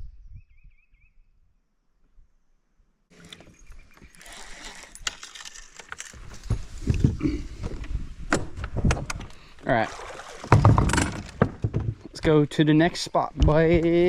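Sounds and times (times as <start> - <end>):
wind buffeting microphone: 6.4 - 9.4
handling knocks on a boat: 10.4 - 12.1.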